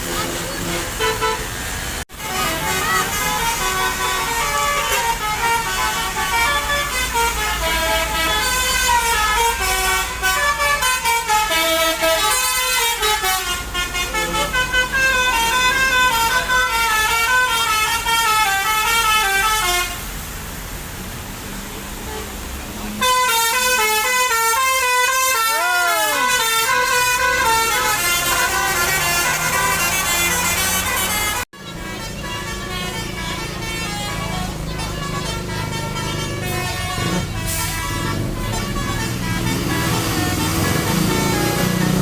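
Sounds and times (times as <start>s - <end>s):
bus musical horn tune: 0.0s - 20.1s, 23.0s - 42.0s.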